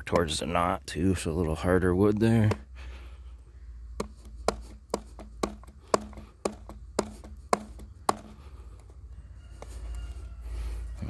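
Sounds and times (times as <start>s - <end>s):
knife chopping wood: 2.4s - 2.7s, 4.0s - 8.4s.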